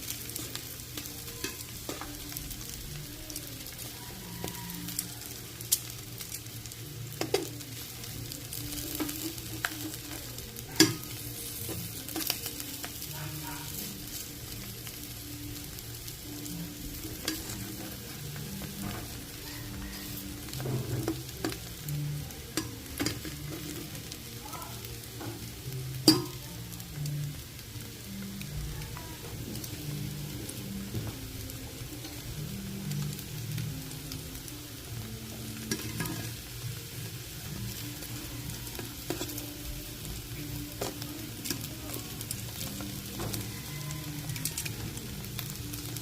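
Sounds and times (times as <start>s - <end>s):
food sizzling in hot oil: 0.0s - 46.0s
utensil stirring and scraping pan: 16.7s - 21.8s, 22.5s - 24.2s, 35.4s - 45.4s
utensil clicking against pan: 35.6s - 36.4s.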